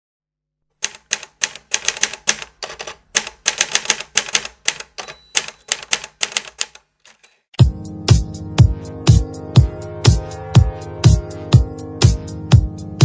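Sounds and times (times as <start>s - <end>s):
typewriter keys clacking: 0.8s - 7.6s.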